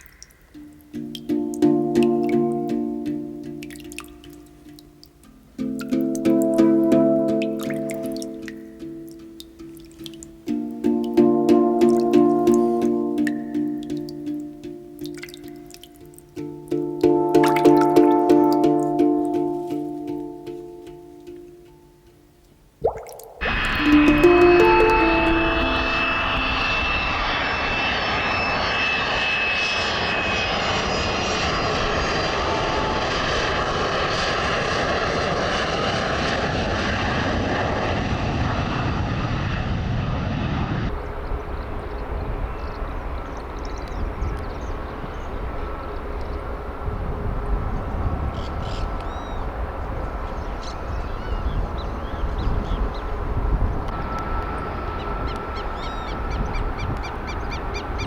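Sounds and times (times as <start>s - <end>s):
jet airliner passing overhead: 6.0s - 9.4s, 10.4s - 14.5s, 23.4s - 58.0s.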